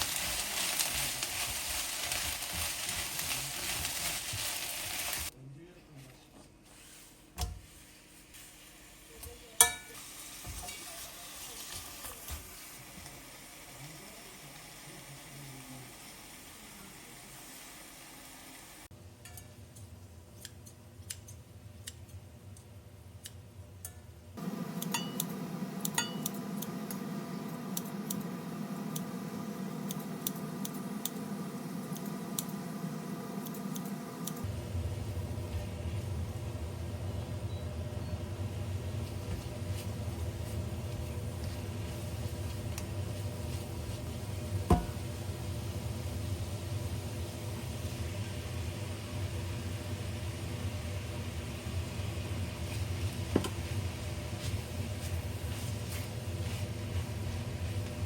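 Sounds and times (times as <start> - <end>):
food sizzling in a frying pan: 0.0 - 5.3, 8.4 - 18.9, 38.3 - 58.0
metal utensil clinking on pan: 9.6 - 10.0, 24.9 - 25.3, 25.9 - 26.4
utensils tapping on dishes: 9.6 - 10.9, 24.8 - 26.7
steady low hum: 24.4 - 58.0.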